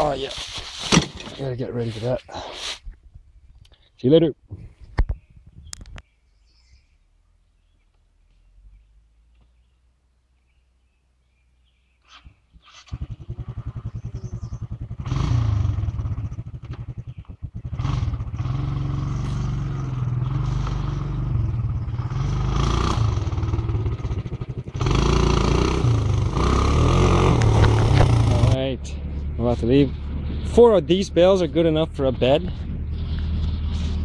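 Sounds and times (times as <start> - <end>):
vehicle engine running: 12.9 - 34.0.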